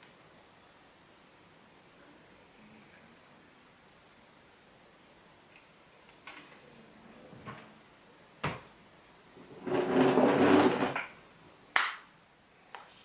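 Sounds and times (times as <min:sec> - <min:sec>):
drawer scraping slide: 0:09.4 - 0:11.1
drawer shutting: 0:09.4 - 0:11.1.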